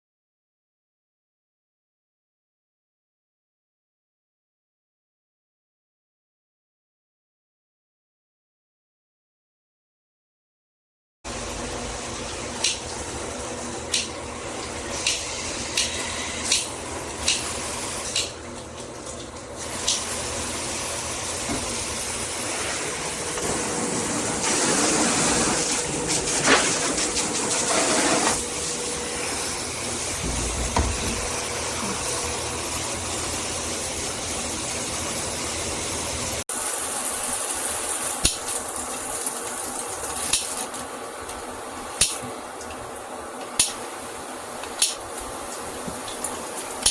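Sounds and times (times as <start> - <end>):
water spraying from shower head: 12.1 - 40.9.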